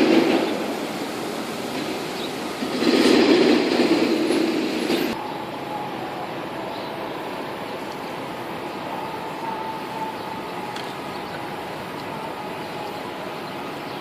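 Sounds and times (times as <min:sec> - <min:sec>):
city noise hiss: 0:00.0 - 0:14.0.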